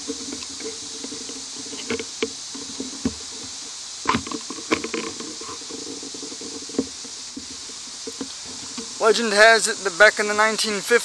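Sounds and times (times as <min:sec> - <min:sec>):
sharp knocks and rustles: 0:00.0 - 0:09.3
insect chorus: 0:00.0 - 0:11.0.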